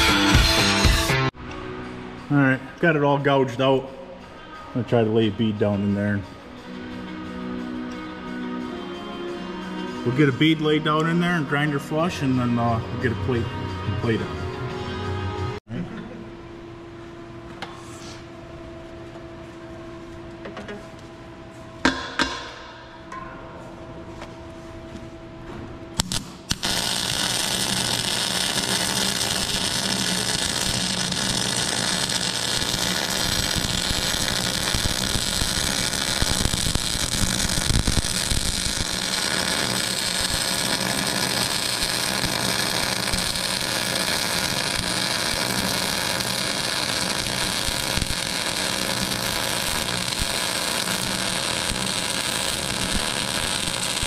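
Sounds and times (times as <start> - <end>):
welding arc hissing: 26.0 - 54.0
welding machine humming: 26.0 - 54.0.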